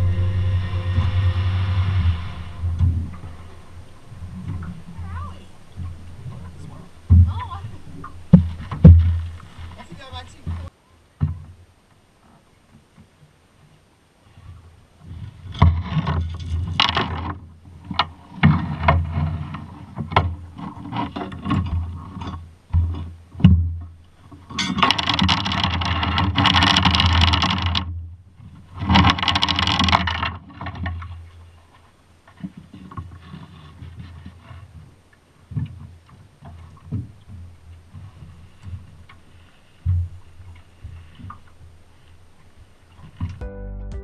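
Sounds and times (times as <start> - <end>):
boat motor hum: 0.0 - 11.7, 16.8 - 43.5
wind and water noise: 0.0 - 43.4.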